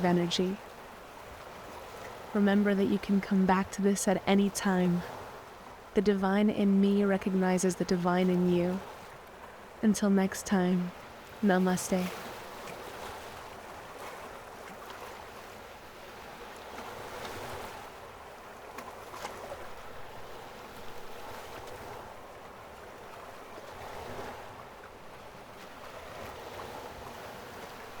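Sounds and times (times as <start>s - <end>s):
ocean waves rushing: 0.0s - 18.2s.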